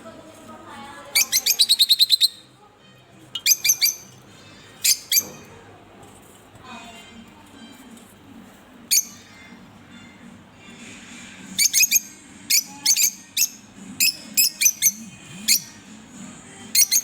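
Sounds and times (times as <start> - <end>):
birds chirping shrilly: 1.2 - 2.5, 3.4 - 5.5.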